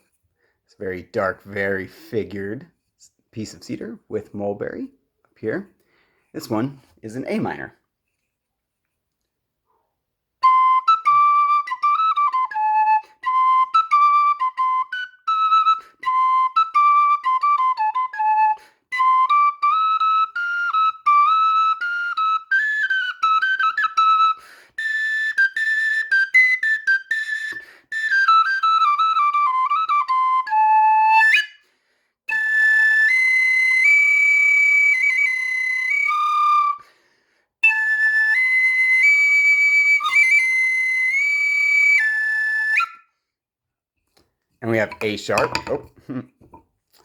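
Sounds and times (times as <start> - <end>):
flute melody: 10.4 - 31.6, 32.3 - 36.8, 37.6 - 43.1.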